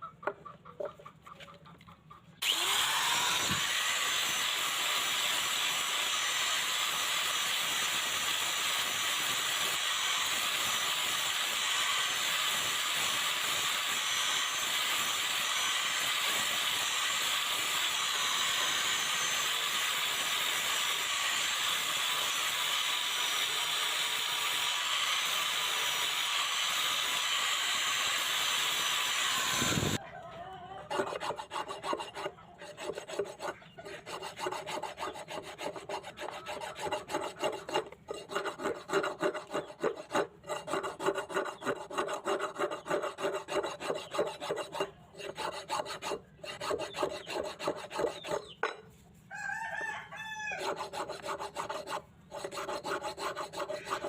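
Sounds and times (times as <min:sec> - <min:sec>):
rooster crowing: 0:30.0 - 0:31.0, 0:49.3 - 0:50.8
knife scraping on sharpening stone: 0:30.9 - 0:49.0.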